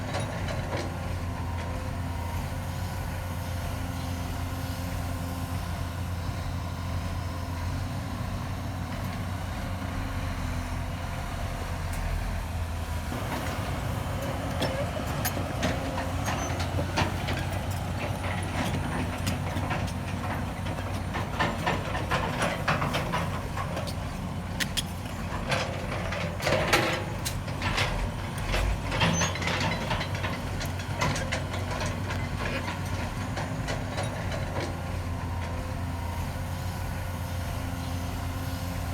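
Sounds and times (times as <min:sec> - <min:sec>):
diesel construction machinery running: 0:00.0 - 0:38.9
metallic clanks and knocks: 0:24.7 - 0:34.8.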